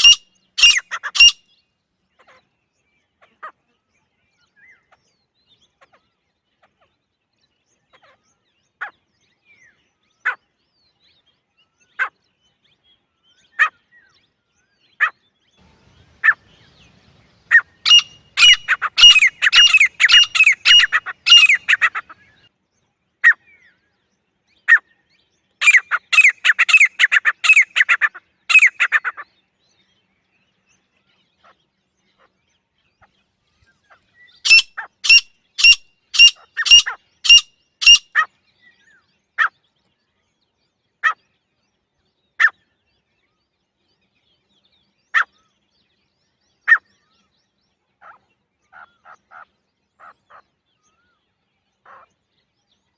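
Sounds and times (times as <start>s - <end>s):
francolin calling: 0.0s - 1.4s, 15.8s - 22.4s, 25.6s - 29.2s, 34.4s - 38.3s.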